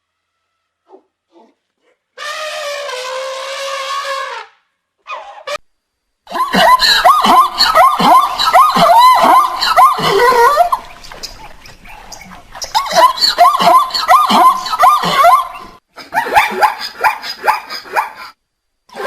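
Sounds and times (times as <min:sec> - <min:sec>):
overlapping animal cries: 0:06.6 - 0:18.4.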